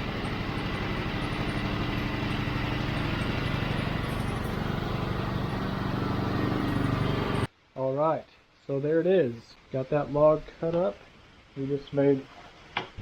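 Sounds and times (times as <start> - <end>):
sawmill engine running: 0.0 - 7.5.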